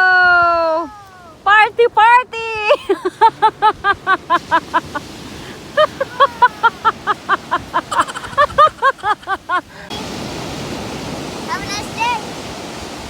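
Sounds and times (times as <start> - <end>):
surf washing: 0.0 - 13.0
seagulls calling: 2.8 - 10.2.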